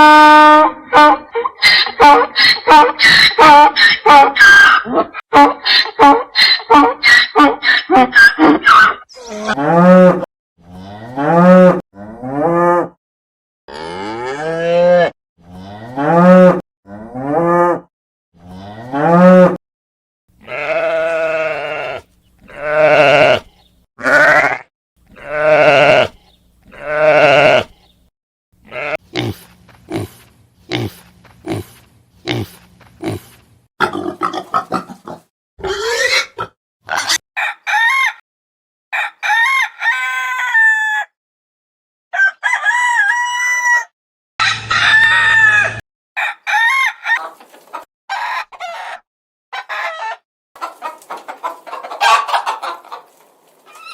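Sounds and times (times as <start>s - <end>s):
chickens clucking: 46.2s - 49.0s, 49.6s - 53.9s.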